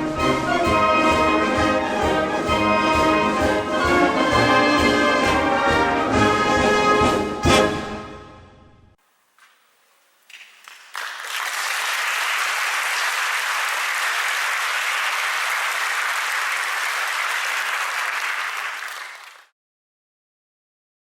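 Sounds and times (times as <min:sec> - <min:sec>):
audience applauding: 0:09.4 - 0:19.5.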